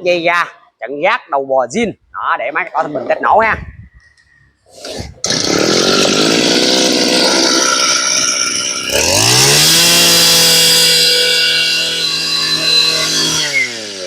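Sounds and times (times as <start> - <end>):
brush cutter engine revving: 4.8 - 14.0.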